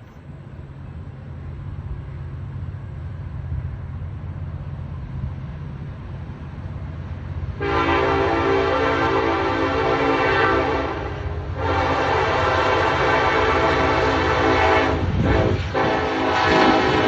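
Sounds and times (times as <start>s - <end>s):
low train rumble: 0.0s - 17.0s
locomotive air horn chord: 7.6s - 17.0s.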